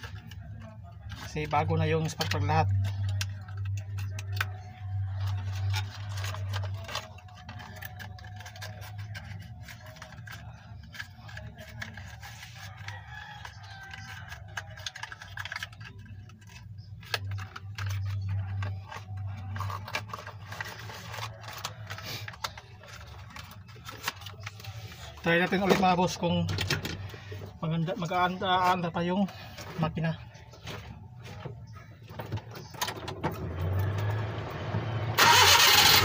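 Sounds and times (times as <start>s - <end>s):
engine running unevenly: 31.6s - 36.0s.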